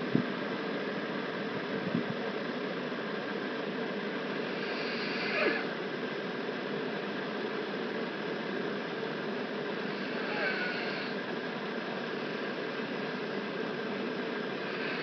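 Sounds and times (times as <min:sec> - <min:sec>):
woman snoring: 0:04.4 - 0:05.7, 0:09.8 - 0:11.2, 0:14.6 - 0:15.0.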